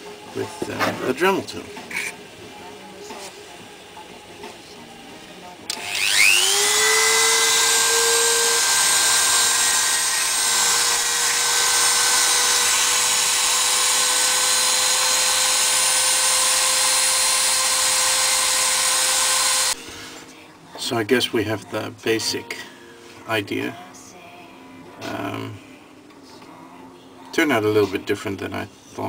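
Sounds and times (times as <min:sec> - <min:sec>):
rotary tool motor whine: 0:05.7 - 0:19.8.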